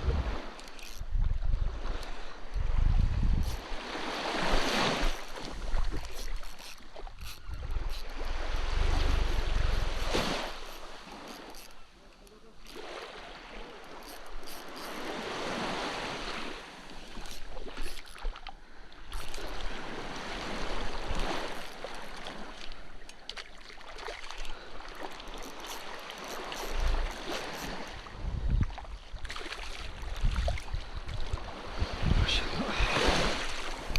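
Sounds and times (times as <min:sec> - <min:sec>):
wind buffeting microphone: 0:00.0 - 0:11.3, 0:26.6 - 0:29.3, 0:29.9 - 0:33.9.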